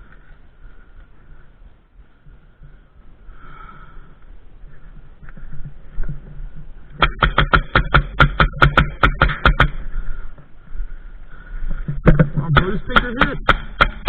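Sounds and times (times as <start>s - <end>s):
airsoft gun rapid shots: 7.0s - 9.8s, 12.6s - 14.0s.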